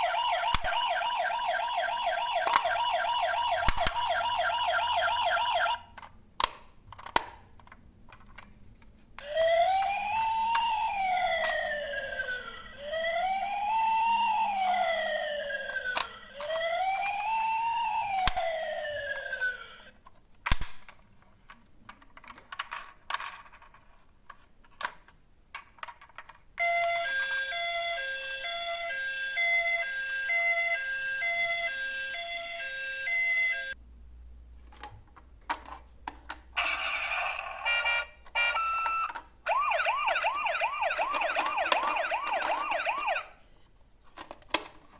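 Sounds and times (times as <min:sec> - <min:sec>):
toy siren wailing: 0:00.0 - 0:05.8, 0:09.2 - 0:19.9, 0:26.6 - 0:33.8, 0:36.6 - 0:43.4
two-tone hi-lo siren: 0:00.0 - 0:05.8, 0:09.2 - 0:19.9, 0:26.6 - 0:33.8, 0:36.6 - 0:43.4.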